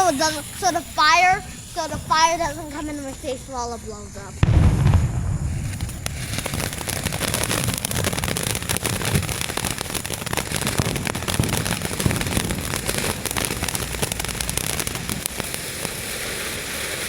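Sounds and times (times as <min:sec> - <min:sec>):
firework hissing and crackling: 0:00.0 - 0:17.0.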